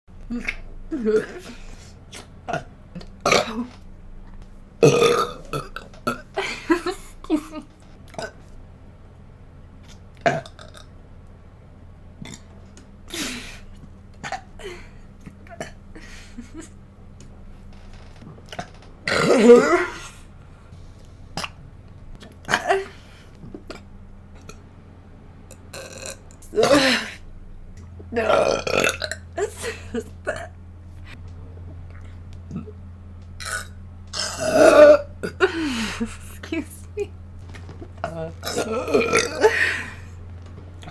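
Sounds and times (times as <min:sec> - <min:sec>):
steady low hum: 0:00.1 - 0:40.9
person burping: 0:00.2 - 0:03.8, 0:04.8 - 0:08.5, 0:10.2 - 0:10.9, 0:12.2 - 0:12.5, 0:18.5 - 0:20.2, 0:22.4 - 0:23.8, 0:25.7 - 0:27.2, 0:28.1 - 0:30.5, 0:31.9 - 0:32.8, 0:33.4 - 0:37.0, 0:37.8 - 0:40.2.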